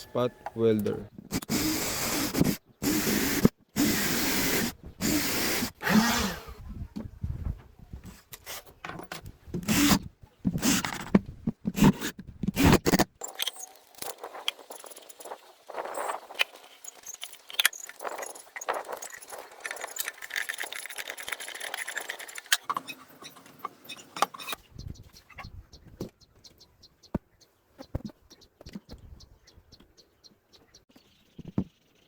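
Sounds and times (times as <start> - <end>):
metal parts and tools rattling: 12.7 - 24.6.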